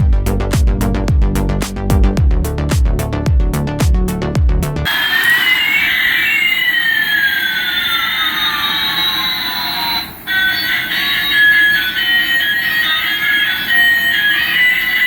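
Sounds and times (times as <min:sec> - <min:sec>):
beeping electronic melody: 0:04.8 - 0:15.0
gliding electronic tones: 0:04.9 - 0:15.0.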